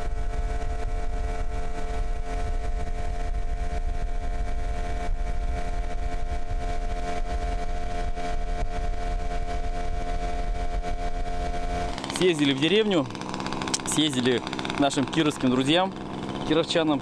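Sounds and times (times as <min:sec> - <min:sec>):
outboard motor droning: 0:00.0 - 0:17.0.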